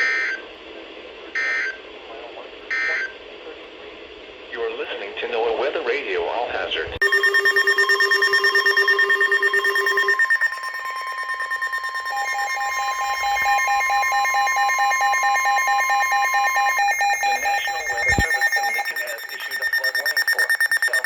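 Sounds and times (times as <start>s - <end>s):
lower steady tone: 7.0s - 21.0s
rapid beeping alert tone: 7.0s - 21.0s
steady high alarm tone: 7.0s - 21.0s.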